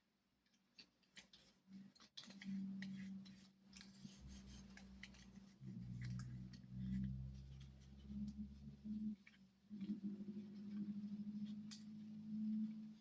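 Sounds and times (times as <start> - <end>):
light clicks and taps: 0.4 - 8.5.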